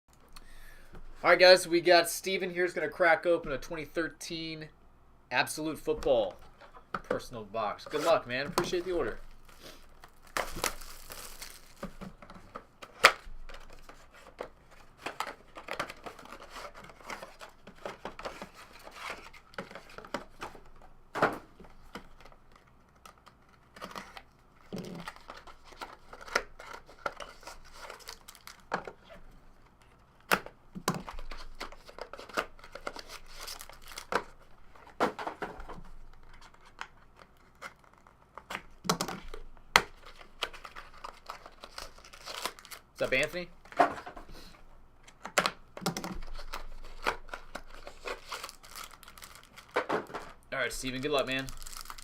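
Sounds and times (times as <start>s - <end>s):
plastic wrapping tearing: 7.9s - 12.0s, 22.6s - 28.7s, 31.1s - 34.5s, 39.9s - 43.3s, 46.2s - 52.0s
cardboard clicks and knocks: 38.4s - 40.6s.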